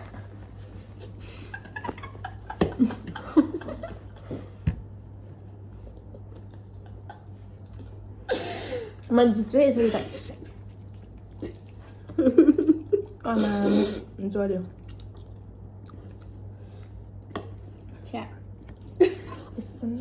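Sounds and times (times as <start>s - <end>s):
steady low hum: 0.0s - 20.0s
eating sounds: 5.3s - 9.1s, 9.8s - 19.8s.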